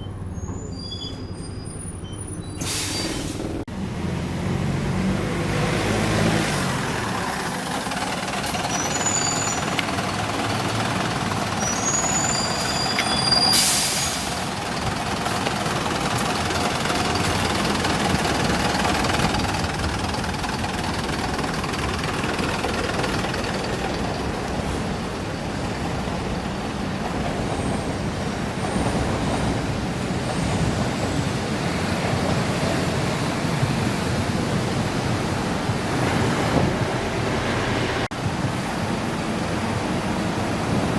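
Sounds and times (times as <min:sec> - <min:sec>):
high-pitched squeaks: 0:00.0 - 0:03.3, 0:07.9 - 0:10.1, 0:11.5 - 0:19.5
bus engine and road noise: 0:00.0 - 0:40.9
short loud hiss: 0:02.6 - 0:03.6, 0:13.2 - 0:14.4.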